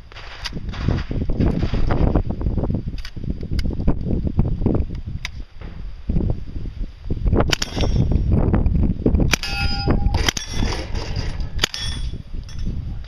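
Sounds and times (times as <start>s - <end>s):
steel plates clanging: 9.4s - 12.7s.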